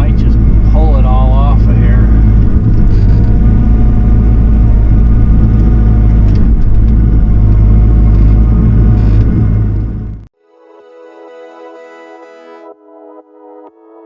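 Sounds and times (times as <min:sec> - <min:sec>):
diesel engine rumbling: 0:00.0 - 0:10.3.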